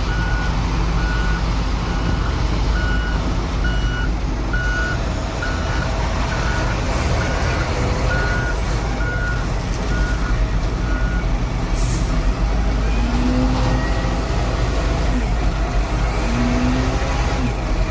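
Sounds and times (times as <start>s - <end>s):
diesel engine running: 0.0s - 17.9s
reversing alarm beeping: 0.1s - 11.3s.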